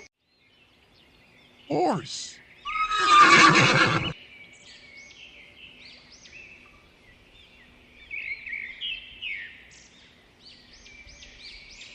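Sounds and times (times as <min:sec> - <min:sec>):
small birds chirping: 0:00.0 - 0:11.9.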